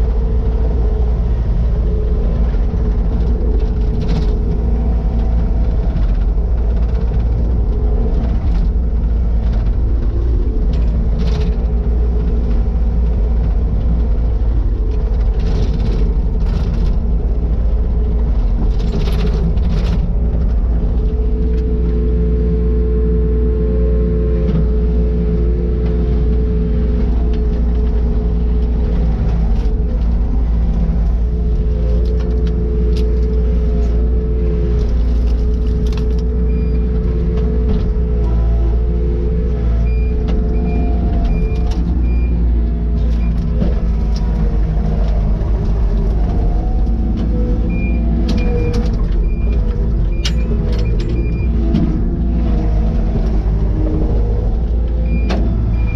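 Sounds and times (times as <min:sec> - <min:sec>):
knocks and clatter: 0:00.0 - 0:21.8, 0:39.8 - 0:55.9
steady whining tone: 0:00.0 - 0:55.9
track loader diesel engine rumbling: 0:00.0 - 0:55.9.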